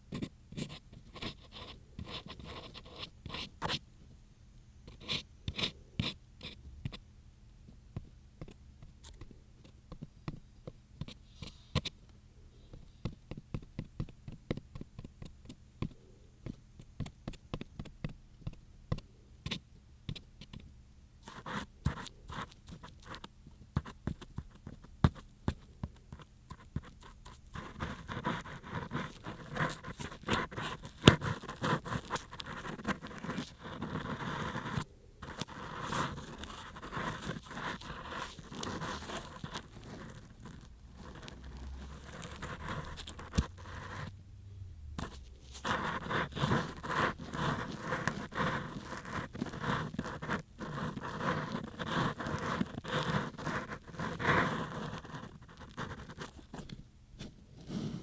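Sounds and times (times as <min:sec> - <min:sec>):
ear pick scratching in an ear: 0:27.7 - 0:44.2, 0:45.0 - 0:56.7.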